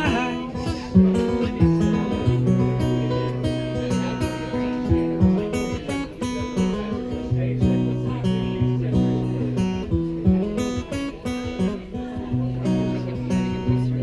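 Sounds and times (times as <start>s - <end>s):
person singing: 0.0s - 1.4s
acoustic guitar strummed: 0.0s - 14.0s.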